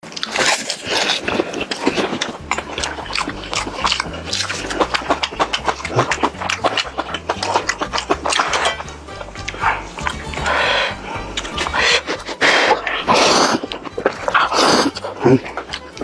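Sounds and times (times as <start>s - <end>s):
crunching and chewing fried chicken: 0.0s - 16.0s
background music with bass line: 1.6s - 16.0s.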